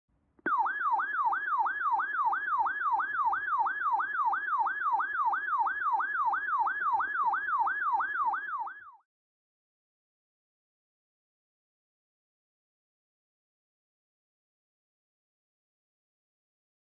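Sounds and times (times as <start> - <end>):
electronic siren yelping: 0.5 - 9.0.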